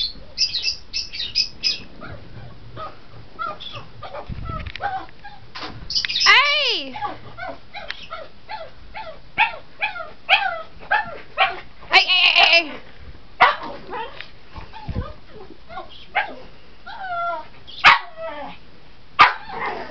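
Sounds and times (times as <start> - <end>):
dog whining and yipping: 1.6 - 5.4, 6.0 - 11.5, 16.9 - 18.6.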